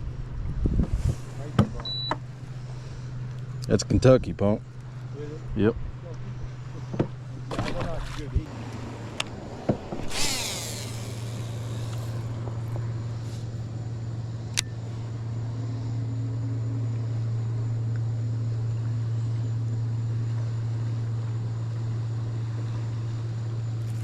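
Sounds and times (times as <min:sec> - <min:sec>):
boat motor humming: 0:06.1 - 0:23.9.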